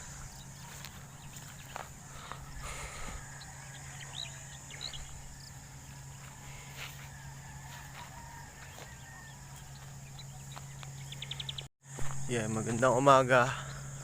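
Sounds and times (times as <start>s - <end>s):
insects buzzing: 0.0s - 14.0s
steady low hum: 0.0s - 14.0s
bird chirps: 3.3s - 6.3s, 8.7s - 11.7s.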